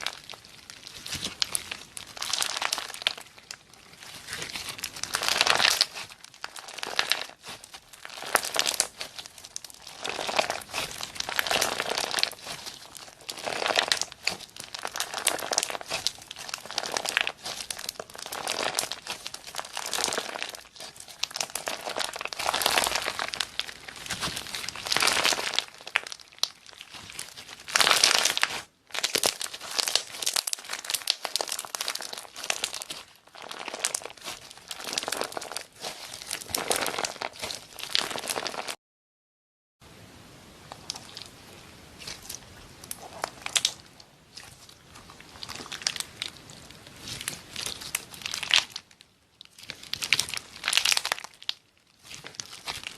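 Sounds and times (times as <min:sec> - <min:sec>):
slime crackling and popping: 0:00.0 - 0:38.8, 0:40.7 - 0:41.4, 0:42.0 - 0:52.9.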